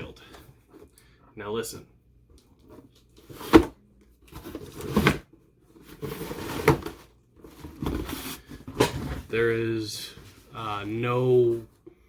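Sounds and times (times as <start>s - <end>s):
objects knocking inside cardboard box: 5.9s - 9.3s.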